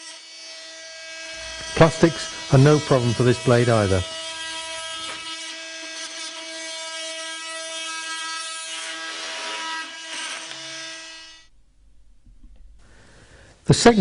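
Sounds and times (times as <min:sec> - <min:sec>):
oscillating tool cutting plastic: 0:00.0 - 0:11.5.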